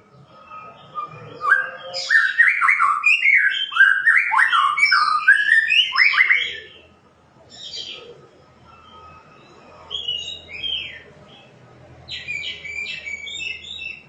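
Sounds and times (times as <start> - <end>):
bird singing whistled notes: 0.6 - 6.8, 9.9 - 11.0, 12.1 - 14.0.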